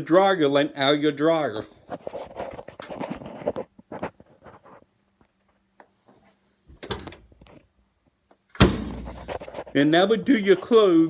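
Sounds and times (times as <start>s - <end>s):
loud sharp thump: 8.6s - 9.4s.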